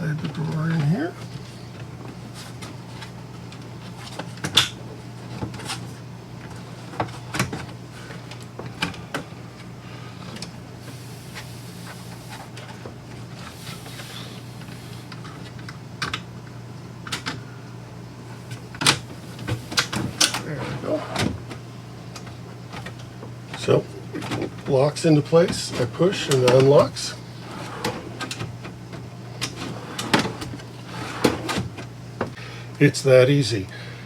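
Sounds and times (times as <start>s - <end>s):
steady low hum: 0.0s - 34.0s
drawer sliding hiss: 10.8s - 12.6s, 13.4s - 15.2s, 19.1s - 21.4s, 25.6s - 28.5s, 29.4s - 31.8s.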